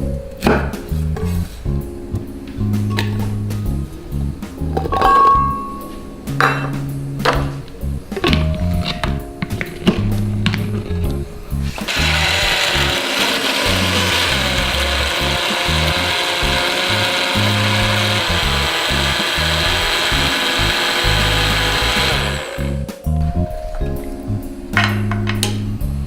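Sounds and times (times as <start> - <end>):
background music: 0.0 - 26.0
electric blender grinding: 11.7 - 22.9.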